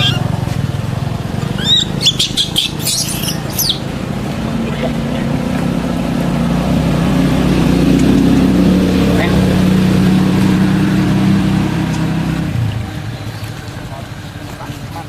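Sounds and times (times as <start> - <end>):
animal chirping squeaks: 0.0 - 0.4, 1.4 - 3.9
vehicle engine hum: 0.0 - 15.0.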